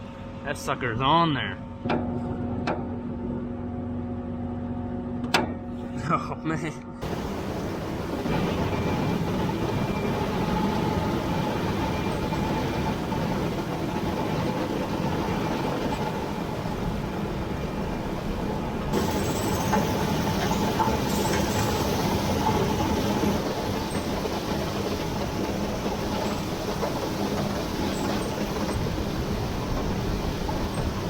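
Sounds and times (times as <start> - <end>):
combine harvester droning: 1.6 - 31.0
high hiss: 18.9 - 31.0.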